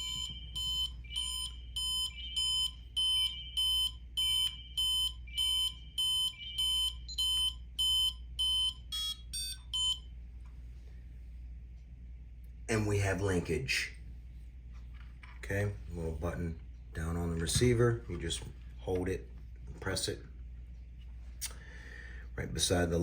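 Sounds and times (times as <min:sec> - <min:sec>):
short electronic beeps: 0:00.0 - 0:10.0.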